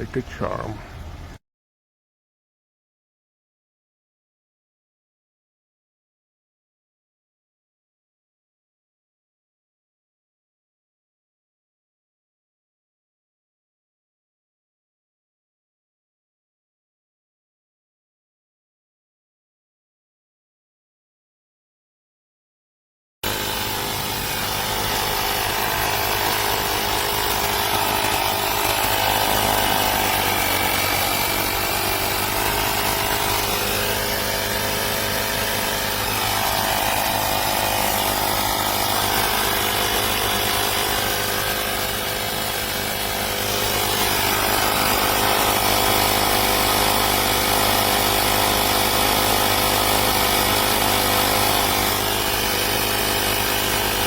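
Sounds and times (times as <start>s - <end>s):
air compressor running: 23.2s - 54.0s.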